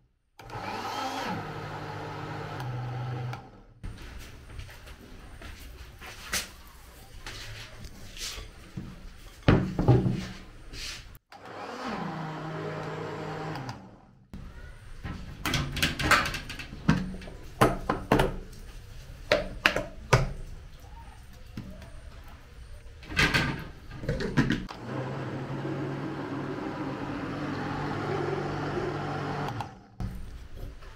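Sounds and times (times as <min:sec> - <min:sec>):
electric blender running: 0:00.4 - 0:03.6, 0:11.3 - 0:14.1, 0:24.7 - 0:30.0
kitchen knocks and clatter: 0:08.7 - 0:10.4, 0:15.0 - 0:18.6, 0:19.2 - 0:20.5, 0:23.0 - 0:24.7.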